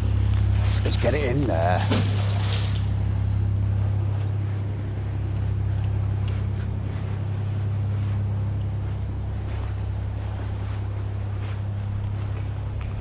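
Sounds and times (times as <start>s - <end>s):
boat engine humming: 0.0s - 13.0s.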